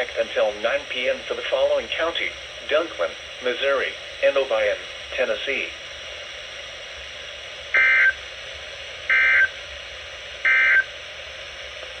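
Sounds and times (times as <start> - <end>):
broadcast background hiss: 0.0 - 12.0
buzzy data tone bursts: 7.7 - 8.2, 9.1 - 9.6, 10.4 - 10.9.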